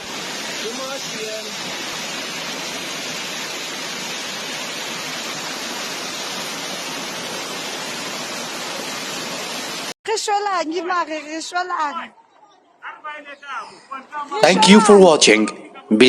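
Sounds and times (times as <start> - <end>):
floodwater rushing: 0.0 - 10.0.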